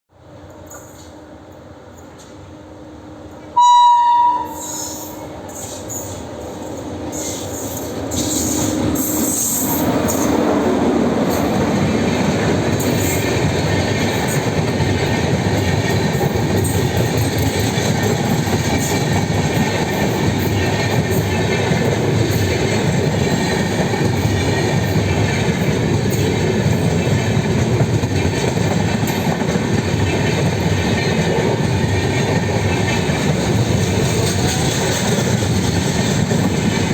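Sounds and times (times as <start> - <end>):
train passing rumble: 0.1 - 36.9
locomotive horn blast: 3.6 - 5.2.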